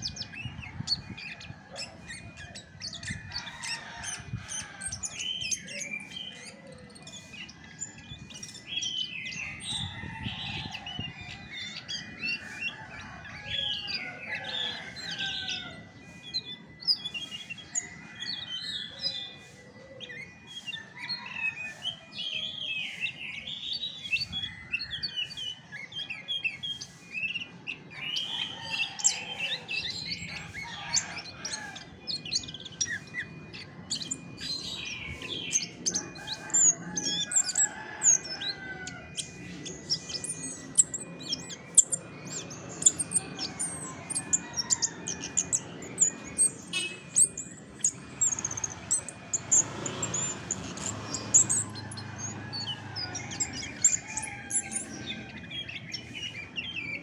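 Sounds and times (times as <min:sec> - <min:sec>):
thrush singing: 0:27.4 - 0:56.6.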